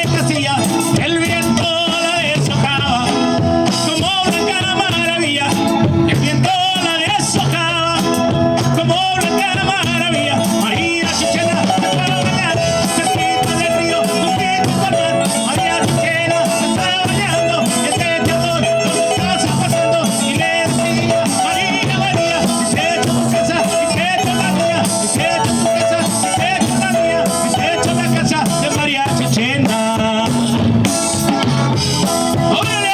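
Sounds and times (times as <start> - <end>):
latin band playing: 0.0 - 32.9
lead singer: 0.0 - 32.9.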